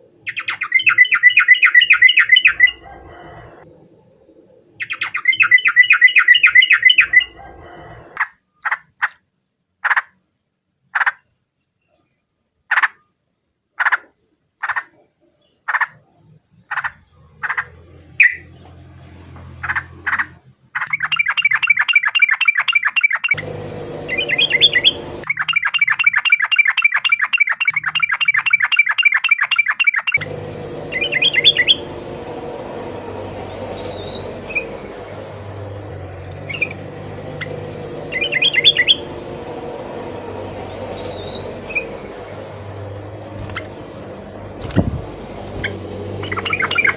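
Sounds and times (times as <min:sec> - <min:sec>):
bulbul calling: 0:00.2 - 0:03.7, 0:04.8 - 0:09.2, 0:13.8 - 0:18.5, 0:19.4 - 0:32.0, 0:36.2 - 0:39.4, 0:40.6 - 0:42.7, 0:43.4 - 0:46.9
low steady hum: 0:23.4 - 0:25.3, 0:30.2 - 0:46.9.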